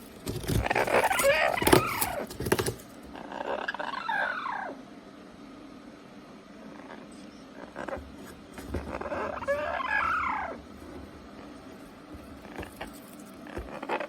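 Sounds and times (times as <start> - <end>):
beak crunching cardboard: 0.0 - 3.2, 7.8 - 14.0
parrot warbling call: 3.2 - 4.8, 9.0 - 10.6.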